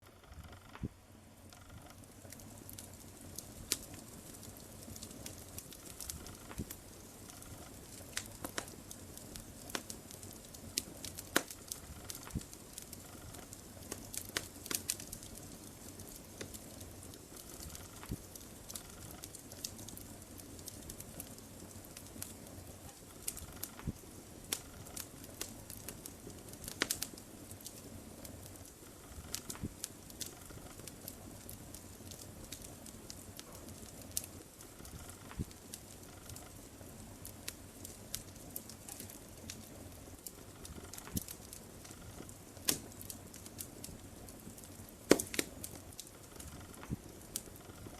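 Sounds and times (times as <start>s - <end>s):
low hiss of burning: 0.0s - 47.9s
fire pops and snaps: 0.2s - 47.9s.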